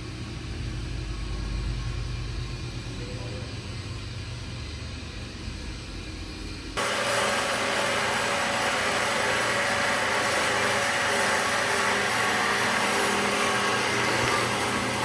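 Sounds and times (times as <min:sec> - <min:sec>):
bandsaws running: 0:06.8 - 0:15.0.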